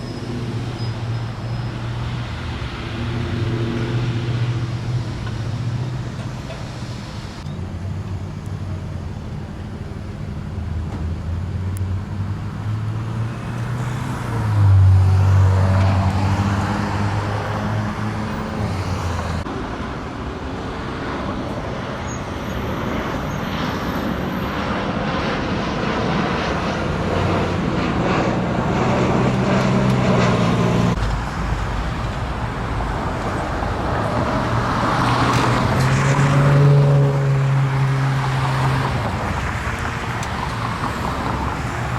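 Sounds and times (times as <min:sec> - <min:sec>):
tyres hissing on road: 0:00.0 - 0:07.5, 0:30.9 - 0:41.9
passing vehicle engines: 0:00.0 - 0:41.9.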